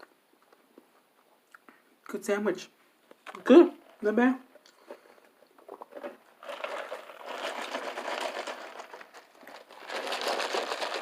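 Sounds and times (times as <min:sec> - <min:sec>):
paper packaging crinkling: 0:05.6 - 0:11.0.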